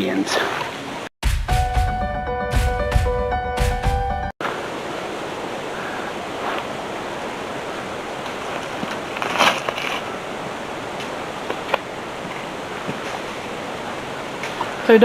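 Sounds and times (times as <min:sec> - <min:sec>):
creek water flowing: 0:04.4 - 0:15.0
short rustle: 0:08.2 - 0:10.2.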